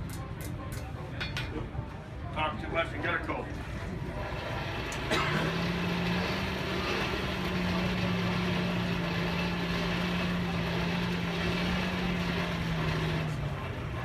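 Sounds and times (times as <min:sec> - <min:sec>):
hand-cranked blower whirring: 0:04.1 - 0:14.0.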